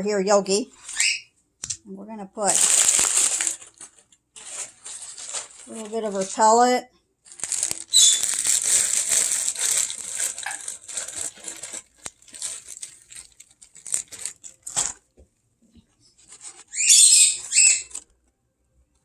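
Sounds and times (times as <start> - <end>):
packing paper rustling and crinkling: 2.4 - 15.1, 16.2 - 16.8.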